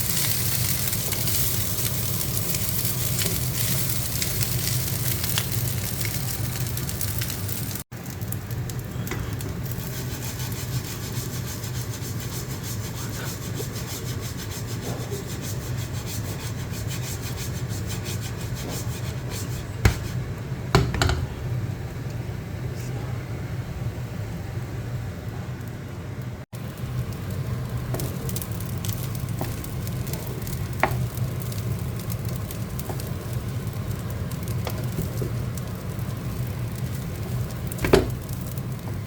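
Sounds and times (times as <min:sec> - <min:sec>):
rubbing and scraping: 0:09.8 - 0:20.2.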